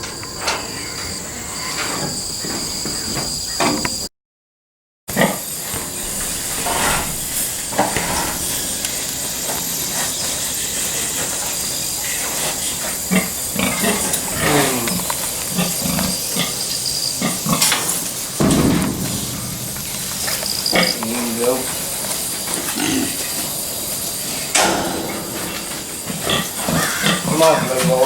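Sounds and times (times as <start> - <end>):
insects hissing: 0.0 - 4.1, 5.1 - 28.0
hogs grunting: 11.8 - 28.0
loud noisy burst: 18.2 - 22.1.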